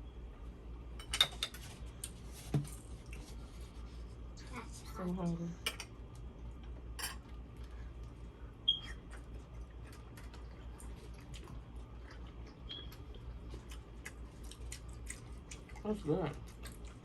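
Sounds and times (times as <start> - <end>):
steady low hum: 0.0 - 17.0
wet chewing with mouth clicks: 3.0 - 3.5, 7.5 - 17.0.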